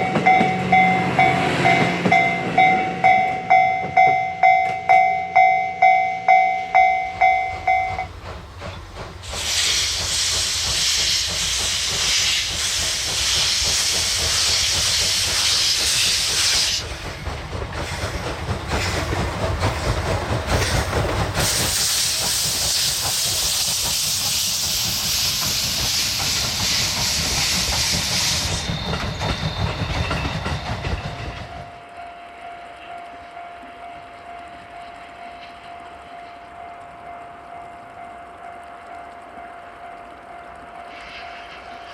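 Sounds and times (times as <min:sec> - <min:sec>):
steam locomotive rumble: 0:00.0 - 0:41.9
loud hisses of steam: 0:08.3 - 0:31.2.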